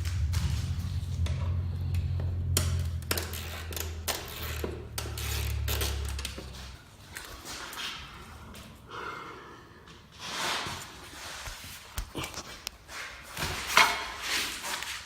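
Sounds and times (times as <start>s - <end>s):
steady low hum: 0.0s - 9.0s.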